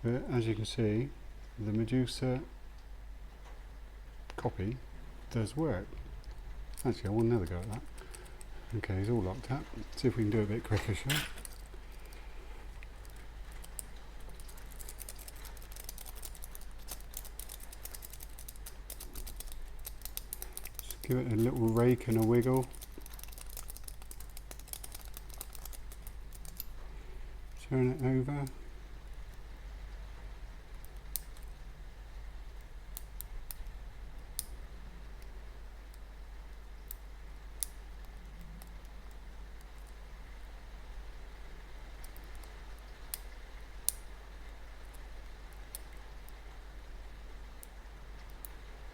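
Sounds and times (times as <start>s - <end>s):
lock pick clicking and scraping: 10.0s - 12.2s, 12.8s - 26.8s.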